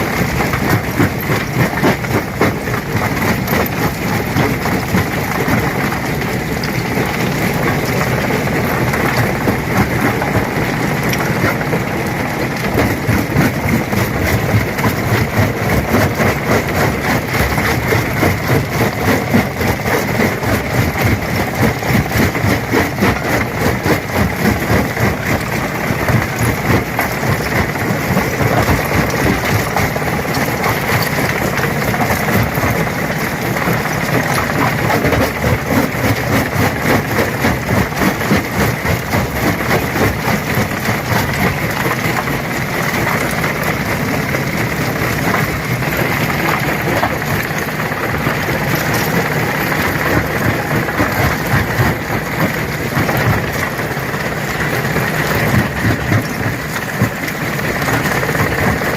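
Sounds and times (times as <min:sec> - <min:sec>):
rocks crackling and clattering: 0:00.0 - 0:58.9
stone crusher machine hum: 0:00.0 - 0:58.9.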